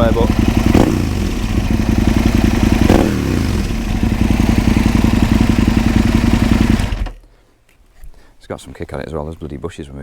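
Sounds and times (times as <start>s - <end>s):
motorcycle engine idling: 0.0s - 7.3s.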